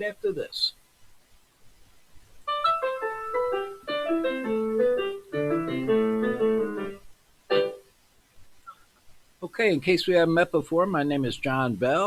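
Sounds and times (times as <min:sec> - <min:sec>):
piano jingle: 0:02.5 - 0:07.8.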